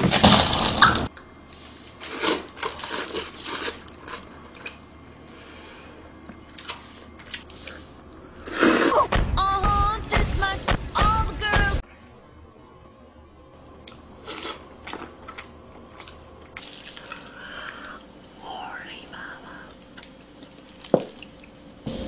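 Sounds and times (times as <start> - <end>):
wet chewing and slurping: 0.8 - 5.4, 6.4 - 8.9, 13.8 - 18.4
music: 8.9 - 13.3.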